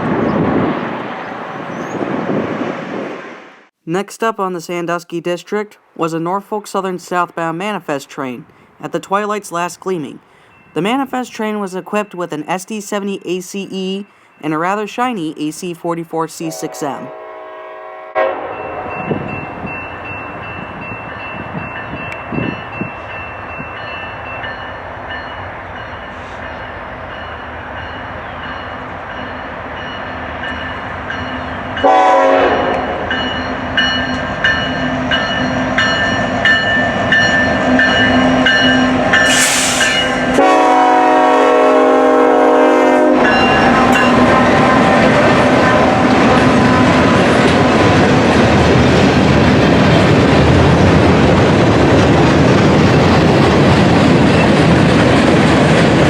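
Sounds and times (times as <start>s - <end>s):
freight train rumbling by: 0.0s - 3.7s, 16.4s - 56.0s
train horn: 16.5s - 19.1s, 31.8s - 33.1s, 39.2s - 46.8s.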